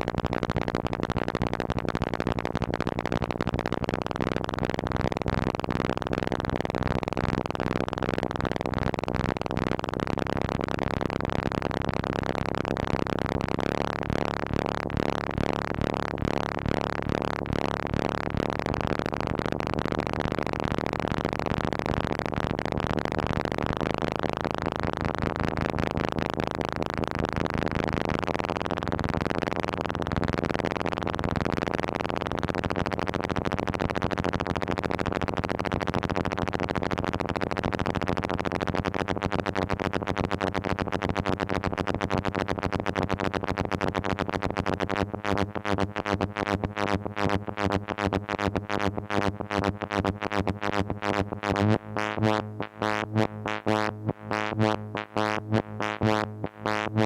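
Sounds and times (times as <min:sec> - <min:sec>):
buzzing analog synthesizer tone: 0:00.0 - 0:57.0.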